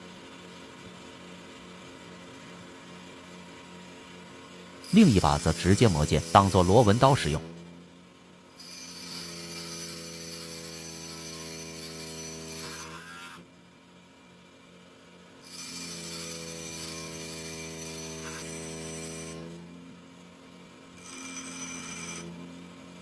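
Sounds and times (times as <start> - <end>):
power grinder grinding steel: 4.9 - 7.6, 8.6 - 13.4, 15.4 - 19.9, 21.0 - 23.0.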